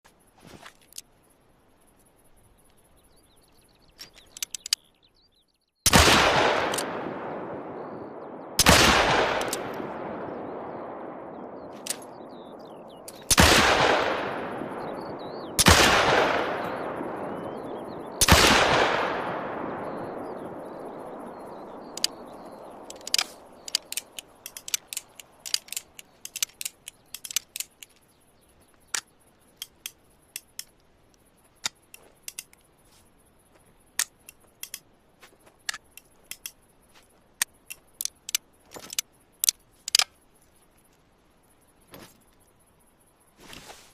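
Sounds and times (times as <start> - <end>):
faint clicks: 2.6 - 4.9, 21.9 - 32.8, 33.5 - 42.6.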